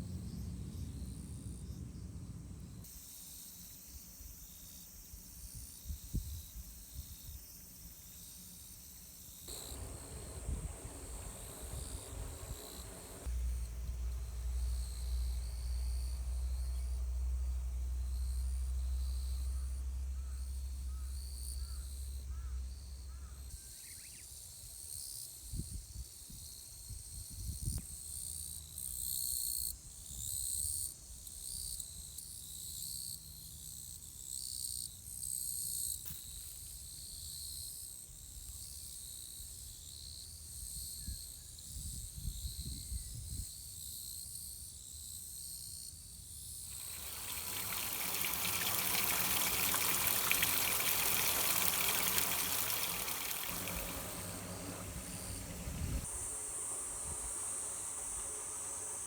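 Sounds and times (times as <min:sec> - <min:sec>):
high insect chorus: 0:00.0 - 0:33.6, 0:35.8 - 0:59.0
low rumble: 0:53.5 - 0:56.5.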